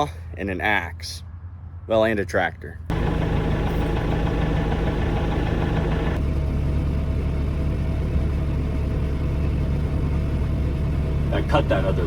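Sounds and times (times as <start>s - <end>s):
tractor engine running: 2.9s - 12.0s.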